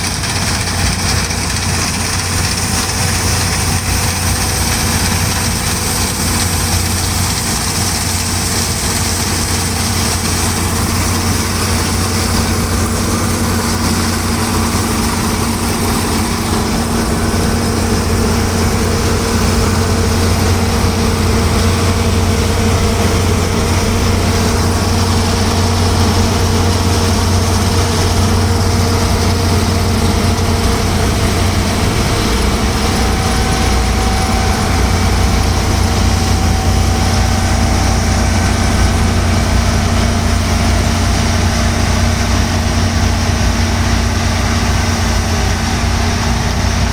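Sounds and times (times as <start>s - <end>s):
diesel engine running: 0.0s - 46.9s.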